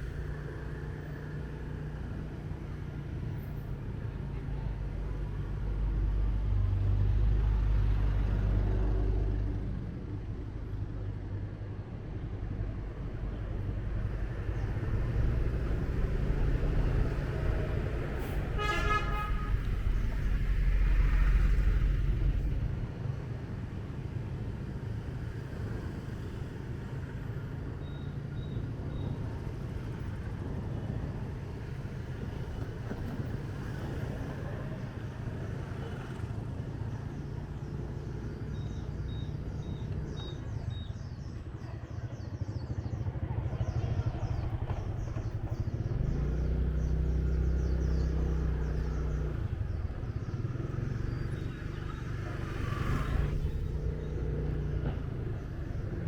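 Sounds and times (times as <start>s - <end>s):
street traffic rumbling: 0.0s - 56.0s
vehicle horn toot: 18.5s - 19.9s.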